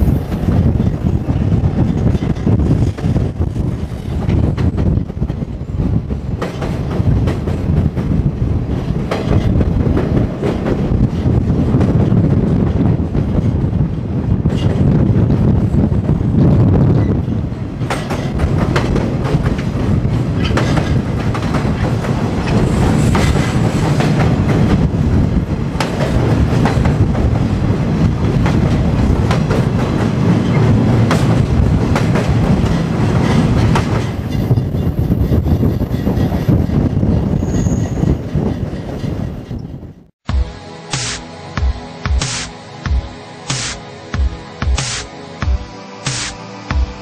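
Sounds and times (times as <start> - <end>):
train wheels rumbling on rail: 0.0 - 40.6
wheels clacking over rail joints: 17.8 - 24.9.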